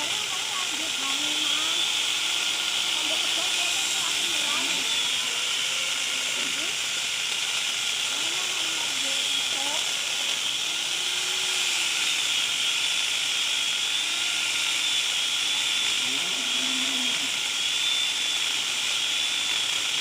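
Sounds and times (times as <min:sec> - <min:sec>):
angle grinder high whine: 0:00.0 - 0:20.0.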